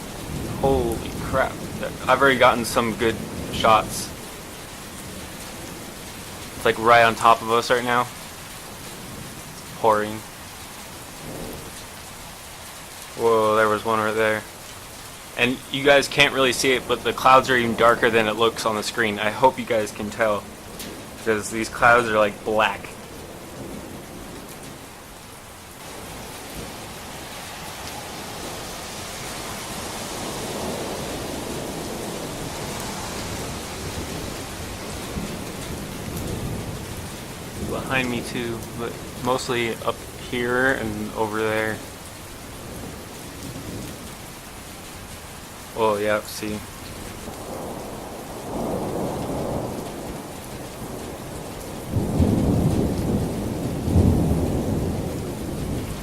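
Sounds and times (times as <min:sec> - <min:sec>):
thunder rumbling: 0:00.0 - 0:12.4, 0:15.3 - 0:45.3, 0:45.9 - 0:56.0
heavy rain pouring: 0:00.0 - 0:56.0.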